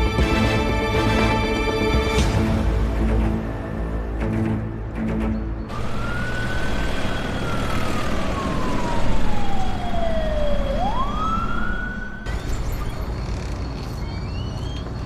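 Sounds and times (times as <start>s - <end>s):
low traffic rumble: 0.0s - 15.0s
emergency vehicle siren wailing: 5.7s - 12.6s.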